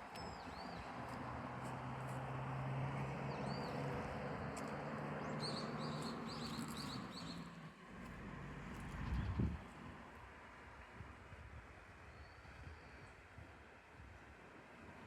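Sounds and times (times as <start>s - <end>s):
low engine hum: 0.0s - 13.3s
small bird chirping: 5.4s - 7.4s.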